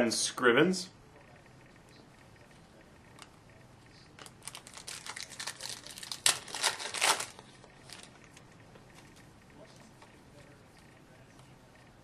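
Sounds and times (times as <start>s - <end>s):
card pack wrapper crinkling: 4.2s - 8.2s.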